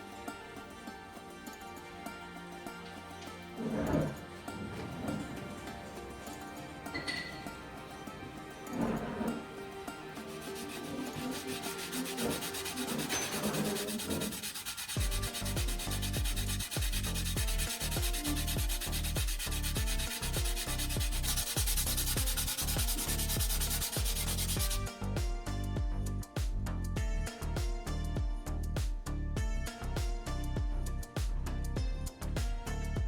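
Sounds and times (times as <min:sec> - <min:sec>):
abrasive sanding: 0:07.4 - 0:24.9
background music with bass beat: 0:14.9 - 0:33.0.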